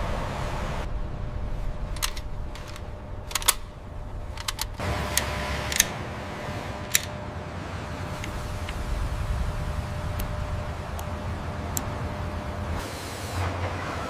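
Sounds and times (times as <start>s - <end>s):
steady low rumble: 0.0s - 12.9s
faint hum: 0.0s - 14.0s
sharp mechanical clicks: 2.0s - 6.0s, 6.8s - 7.2s.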